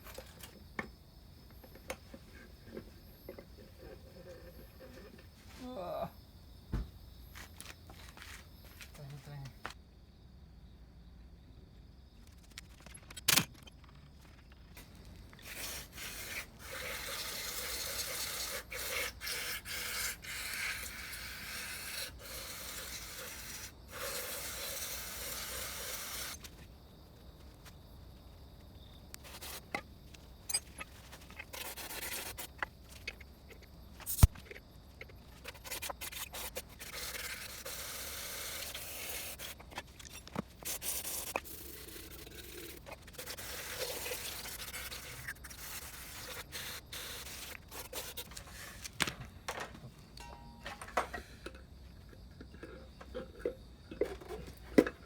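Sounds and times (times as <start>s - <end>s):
hand scraping metal parts: 38.7s - 51.5s.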